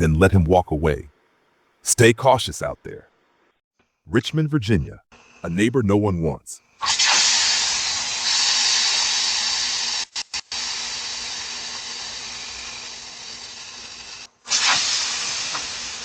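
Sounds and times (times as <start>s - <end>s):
air hissing from tyre: 6.8s - 16.0s.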